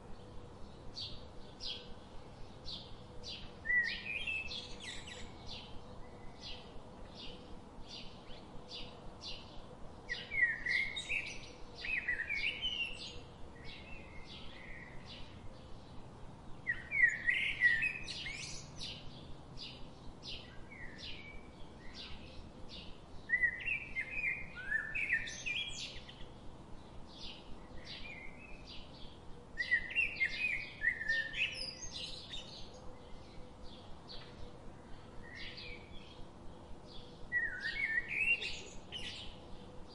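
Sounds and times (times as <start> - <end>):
bird warbling song: 2.6 - 39.9.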